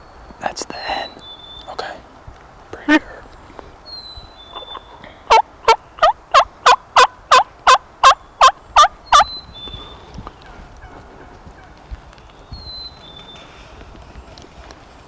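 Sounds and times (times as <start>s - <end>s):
turkey hen yelping: 4.4s - 9.3s.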